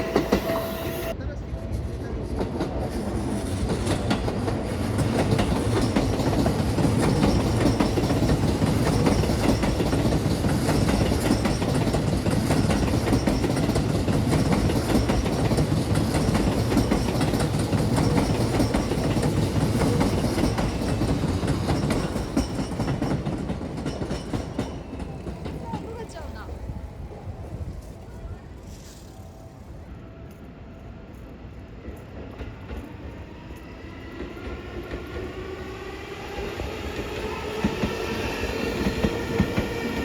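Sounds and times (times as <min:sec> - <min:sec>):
train wheels clattering over rail joints: 0:02.4 - 0:26.0.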